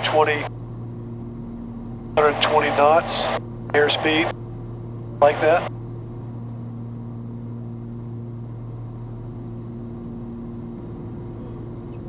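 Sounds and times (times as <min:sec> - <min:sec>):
higher steady tone: 0:02.1 - 0:04.3, 0:05.2 - 0:05.7
piston engines droning: 0:02.1 - 0:04.3, 0:05.2 - 0:05.7.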